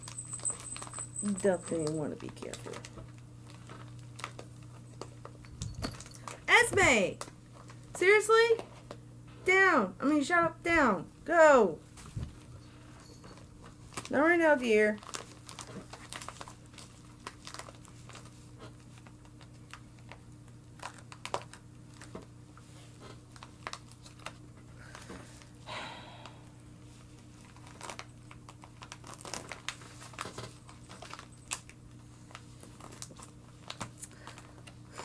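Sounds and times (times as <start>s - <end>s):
paper and plastic crinkling: 0.0s - 8.0s, 13.0s - 14.1s, 14.9s - 25.5s, 26.9s - 35.0s
faint steady hum: 0.0s - 35.0s.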